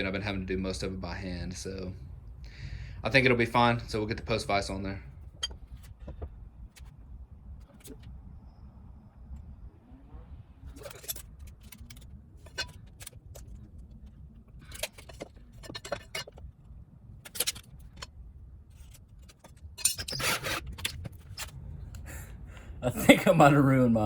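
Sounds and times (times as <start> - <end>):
metal tools clinking: 5.2 - 6.0, 10.6 - 16.5, 17.2 - 18.1, 18.7 - 21.5
low rumble: 20.8 - 24.0.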